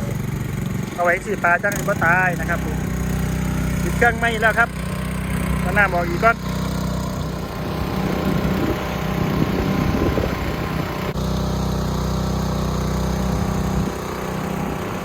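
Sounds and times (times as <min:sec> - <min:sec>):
small engine running steadily: 0:00.0 - 0:15.0.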